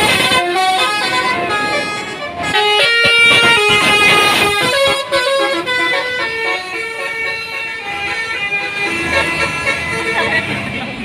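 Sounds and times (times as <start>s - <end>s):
multi-tone bus horn playing tune: 0.0s - 11.0s.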